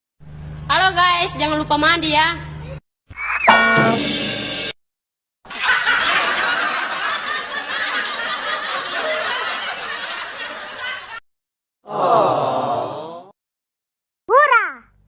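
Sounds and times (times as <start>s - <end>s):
people laughing: 5.5s - 11.2s, 11.9s - 13.3s.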